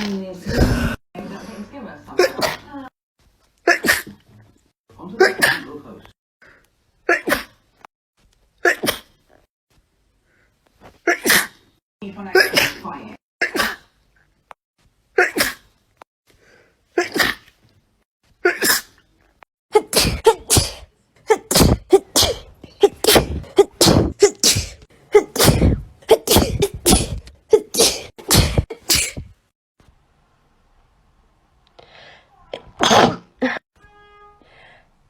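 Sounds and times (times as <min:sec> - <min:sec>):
person sneezing: 0:03.6 - 0:04.2, 0:07.1 - 0:07.5, 0:08.6 - 0:09.2, 0:10.8 - 0:11.6, 0:13.4 - 0:13.9, 0:15.2 - 0:15.7, 0:17.0 - 0:17.5, 0:18.4 - 0:19.0, 0:19.7 - 0:29.3.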